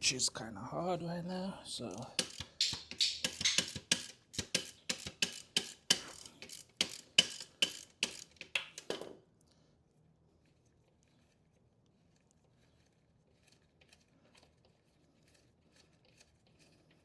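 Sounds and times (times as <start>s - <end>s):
ratchet wrench clicking: 1.9s - 9.0s.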